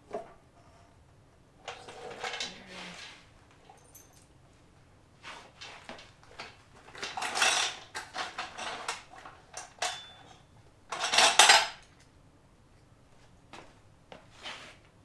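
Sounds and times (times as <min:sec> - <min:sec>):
metal parts and tools rattling: 0:06.4 - 0:10.3, 0:10.9 - 0:11.8.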